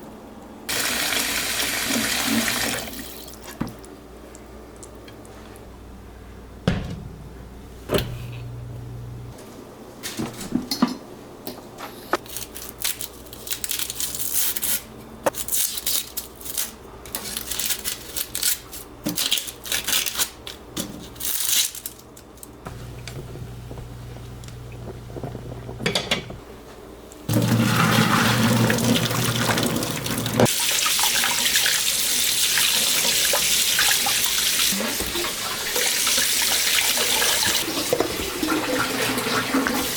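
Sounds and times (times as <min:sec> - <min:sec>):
water splashing and knocks: 0:03.5 - 0:03.9
tap running: 0:22.7 - 0:26.4.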